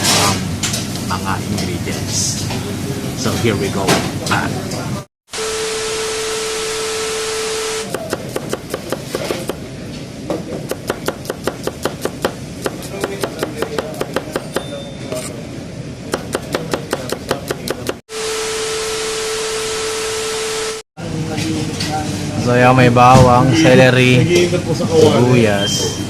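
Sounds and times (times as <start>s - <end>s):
knife chopping on cutting board: 7.9s - 9.6s, 10.5s - 15.3s, 16.1s - 18.0s.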